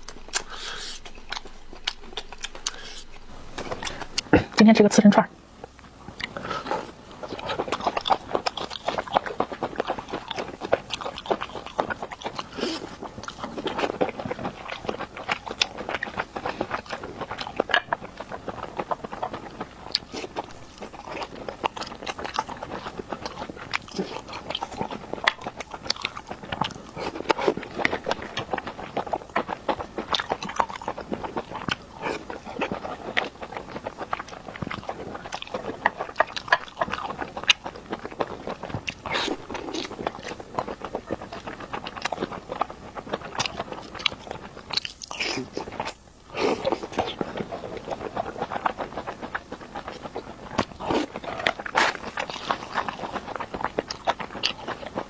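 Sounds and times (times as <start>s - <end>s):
wet mouth clicks and smacks: 0.0s - 4.3s
person chewing food: 0.0s - 4.6s, 5.4s - 55.0s.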